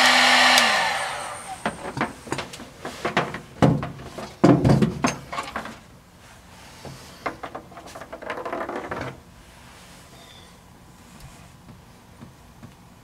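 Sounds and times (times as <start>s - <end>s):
hand tools clattering: 1.5s - 5.8s.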